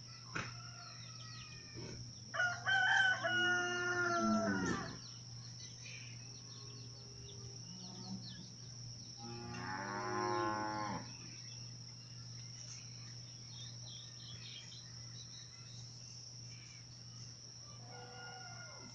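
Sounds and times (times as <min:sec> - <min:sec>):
high insect drone: 0:00.0 - 0:18.9
small birds chirping: 0:00.0 - 0:18.9
cow mooing: 0:03.8 - 0:05.0, 0:09.2 - 0:11.1.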